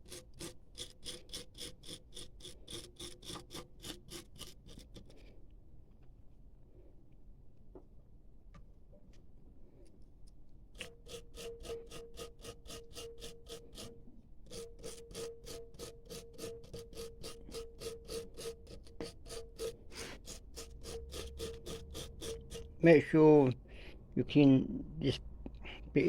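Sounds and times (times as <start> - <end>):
wire brush scrubbing spark plug: 14.5 - 22.9.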